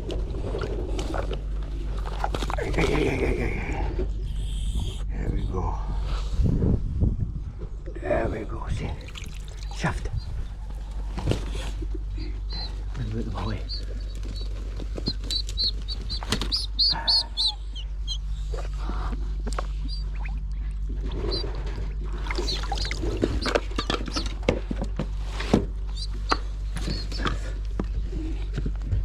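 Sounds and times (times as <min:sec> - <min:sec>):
low hum: 0:00.0 - 0:29.0
birds chirping: 0:09.0 - 0:24.4, 0:25.9 - 0:28.0.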